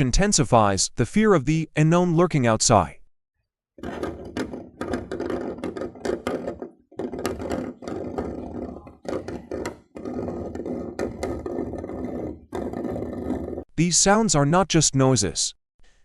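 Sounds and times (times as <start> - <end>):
scratching at a door: 3.8 - 13.7.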